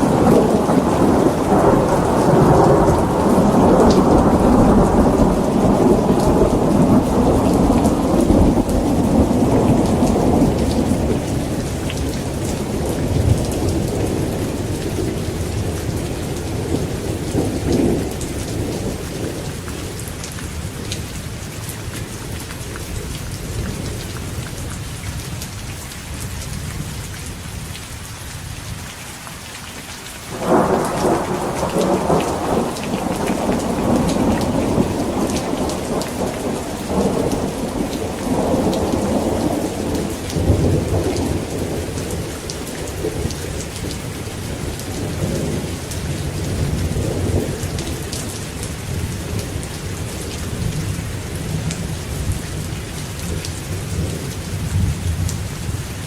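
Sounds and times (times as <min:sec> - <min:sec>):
thunderclap: 0:00.0 - 0:19.4, 0:30.3 - 0:44.0
rolling thunder: 0:00.0 - 0:21.0, 0:30.3 - 0:55.8
heavy rain falling: 0:00.0 - 0:56.0.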